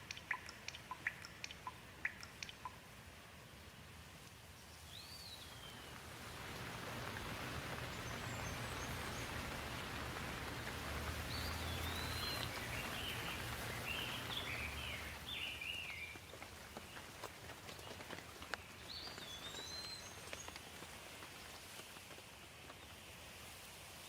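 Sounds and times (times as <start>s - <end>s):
bird chirping: 0.0s - 2.9s, 4.6s - 20.9s
steady rain falling: 0.0s - 24.0s.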